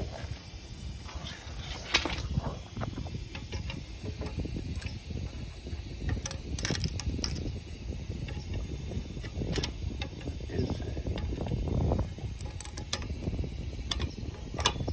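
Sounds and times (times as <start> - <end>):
metallic clicking and rattling: 3.2 - 14.9.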